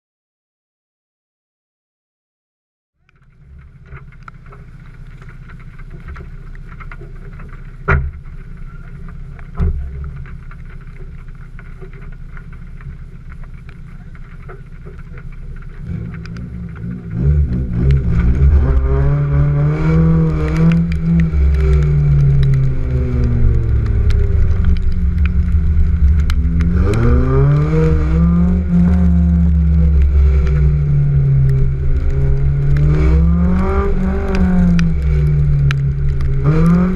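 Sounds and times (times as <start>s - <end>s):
car engine revving: 11.6s - 36.9s.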